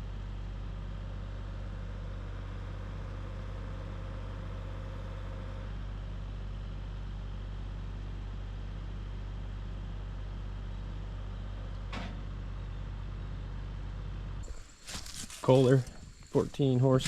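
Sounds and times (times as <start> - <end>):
tractor engine idling: 13.7 - 17.0.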